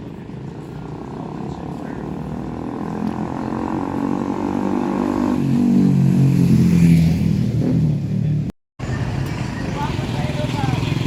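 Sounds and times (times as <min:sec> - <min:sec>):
motorcycle engine approaching: 0:00.3 - 0:08.5.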